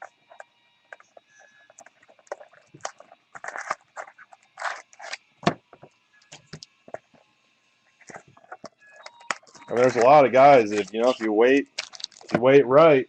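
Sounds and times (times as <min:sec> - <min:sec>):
cards and plastic rustling: 0:00.0 - 0:07.2, 0:08.0 - 0:12.6.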